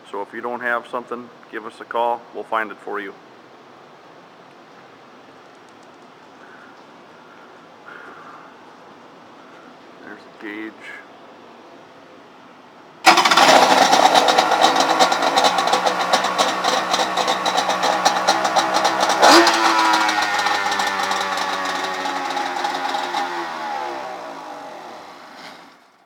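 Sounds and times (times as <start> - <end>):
jet ski engine running: 13.1 - 25.3.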